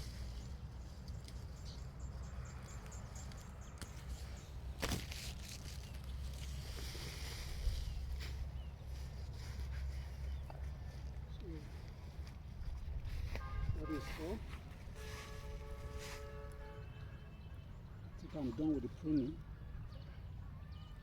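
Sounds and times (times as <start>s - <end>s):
wind on microphone: 12.6s - 14.3s.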